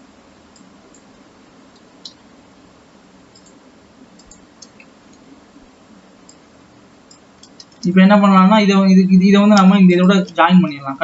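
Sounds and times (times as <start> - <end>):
steady low hum: 0.0 - 11.0
computer mouse clicks: 0.5 - 2.2, 3.3 - 3.6, 4.2 - 5.3, 6.2 - 6.5, 7.1 - 8.0.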